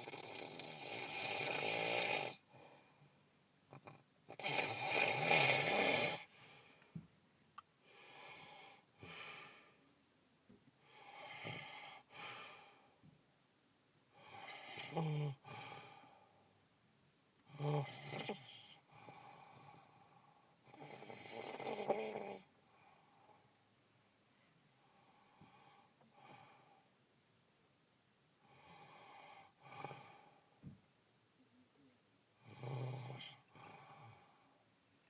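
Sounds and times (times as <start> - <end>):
person snoring heavily: 0.0 - 2.4, 4.3 - 6.3.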